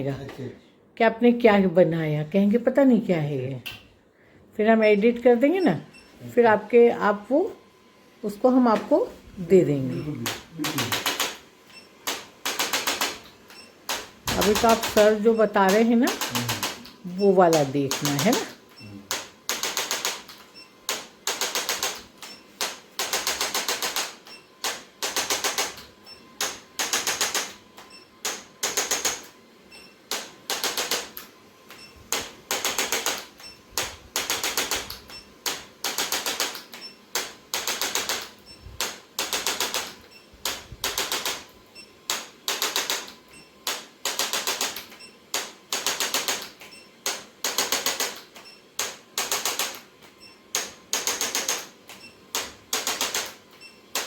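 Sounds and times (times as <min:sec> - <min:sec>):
rapid clicking taps: 0:12.0 - 0:13.3, 0:19.1 - 0:25.8, 0:26.4 - 0:27.6, 0:30.1 - 0:31.1, 0:32.1 - 0:41.4, 0:42.1 - 0:53.4.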